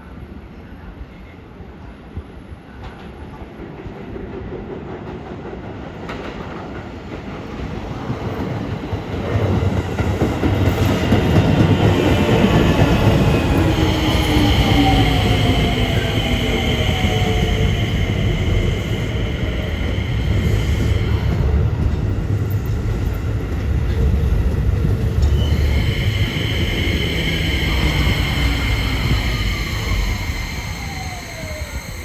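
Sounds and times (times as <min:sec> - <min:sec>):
high steady squeal: 0:10.8 - 0:24.0, 0:24.8 - 0:32.0
electric train whine falling: 0:25.0 - 0:32.0.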